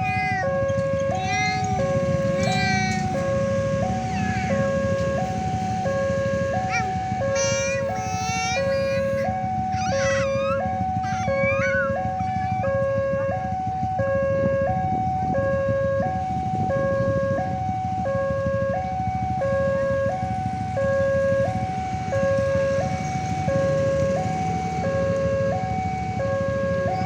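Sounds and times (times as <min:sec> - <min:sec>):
two-tone level-crossing siren: 0:00.0 - 0:15.7.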